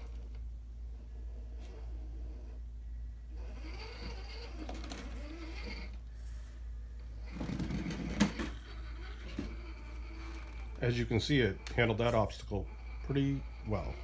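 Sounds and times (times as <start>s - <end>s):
rc car motor whining: 0.0s - 0.4s, 3.4s - 6.0s, 7.2s - 14.0s.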